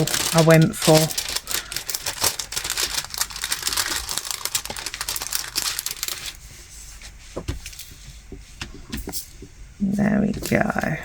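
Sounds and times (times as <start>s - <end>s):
plastic film crinkling by hand: 0.0s - 6.5s.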